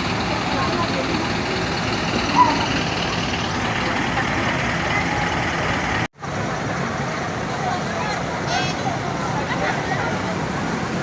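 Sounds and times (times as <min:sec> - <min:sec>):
vehicle engine drone: 0:00.0 - 0:08.4
road noise: 0:00.0 - 0:11.0.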